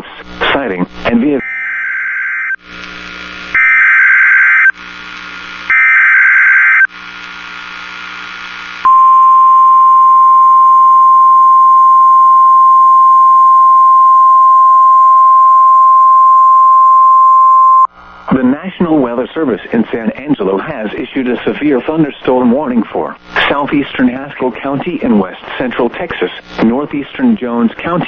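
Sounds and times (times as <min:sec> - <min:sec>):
radio static: 0:00.0 - 0:01.6, 0:02.6 - 0:03.7, 0:18.1 - 0:28.0.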